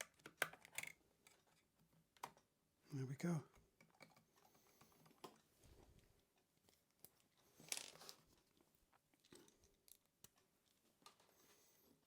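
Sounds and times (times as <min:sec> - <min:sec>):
plastic parts clicking: 0:00.0 - 0:01.4.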